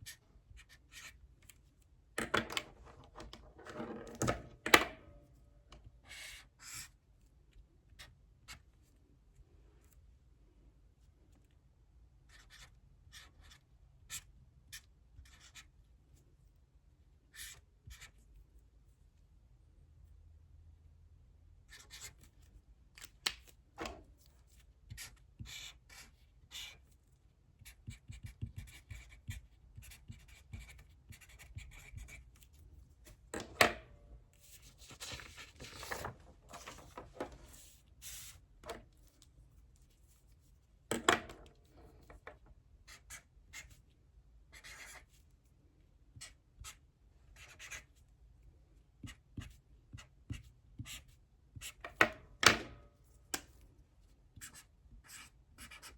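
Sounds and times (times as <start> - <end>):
pen scratching on paper: 21.7 - 22.2, 24.9 - 26.8, 27.6 - 32.4, 44.5 - 45.1, 47.4 - 48.0, 54.4 - 55.9.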